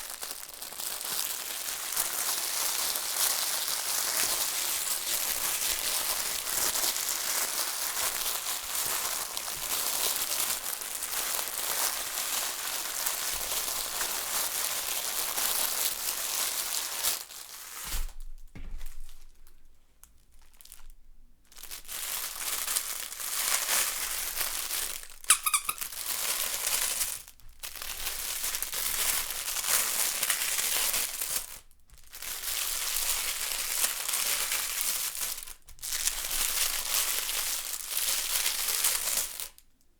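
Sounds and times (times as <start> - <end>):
crinkle toy crinkling: 0.0 - 17.9, 18.9 - 39.8
short squeak: 25.3 - 25.9.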